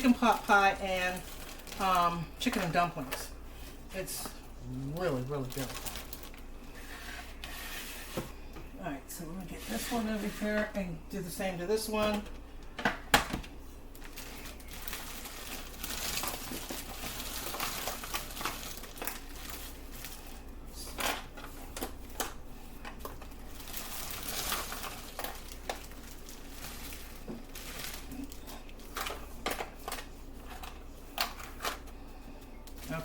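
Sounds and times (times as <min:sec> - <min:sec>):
plastic bag crinkling: 0:00.0 - 0:06.8, 0:13.9 - 0:21.4, 0:23.0 - 0:31.9.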